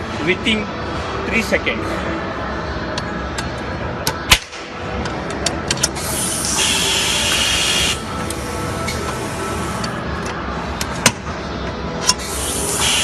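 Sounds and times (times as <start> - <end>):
compressed air hiss: 6.0 - 9.8, 12.3 - 13.0.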